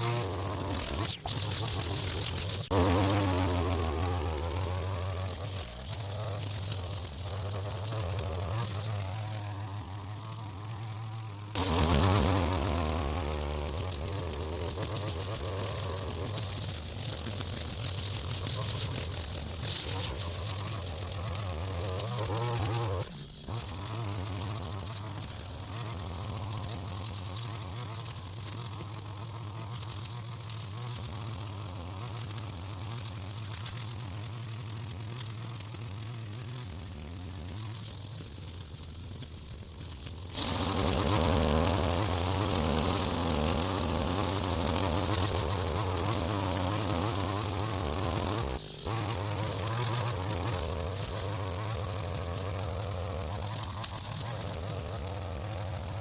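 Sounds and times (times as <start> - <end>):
strimmer cutting grass: 0.0 - 56.0.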